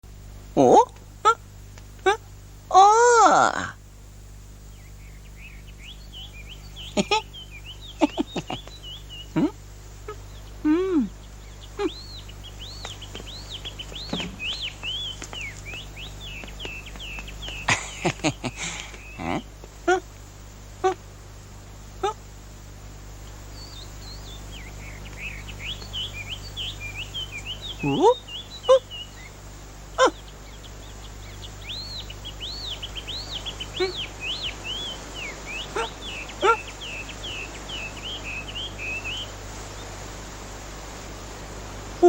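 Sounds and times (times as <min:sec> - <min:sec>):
low steady hum: 0:00.0 - 0:42.0
bird whistling song: 0:10.4 - 0:19.4, 0:23.6 - 0:29.3, 0:31.3 - 0:39.3
short vocal grunt: 0:10.6 - 0:11.1
comic chirping walking effect: 0:12.7 - 0:19.4.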